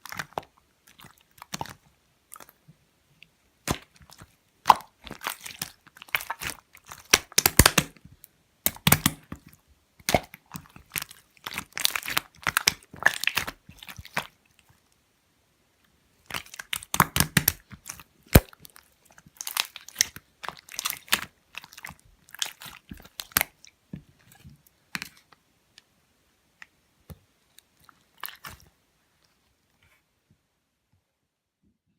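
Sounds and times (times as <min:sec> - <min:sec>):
slime crackling and clicking: 0:06.4 - 0:07.9, 0:08.7 - 0:09.2.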